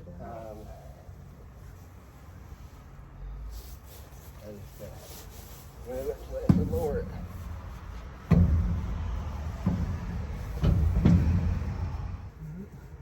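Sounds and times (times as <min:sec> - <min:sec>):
engine rumble: 0:00.0 - 0:13.0
heavy metal clunks: 0:06.5 - 0:12.4.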